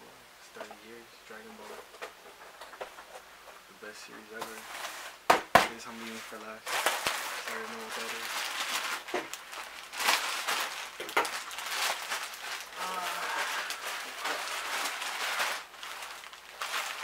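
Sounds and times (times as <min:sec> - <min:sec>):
packaging crinkling and rustling: 0:05.9 - 0:17.0
packaging ripping: 0:06.0 - 0:17.0.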